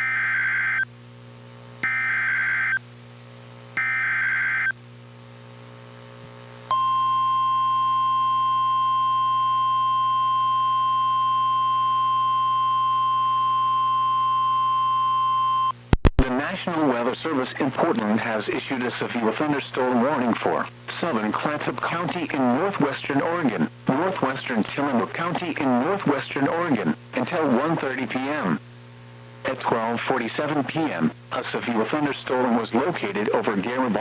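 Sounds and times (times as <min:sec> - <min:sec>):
steady warning alarm tone: 0:01.8 - 0:02.8, 0:03.8 - 0:04.7, 0:06.7 - 0:15.7.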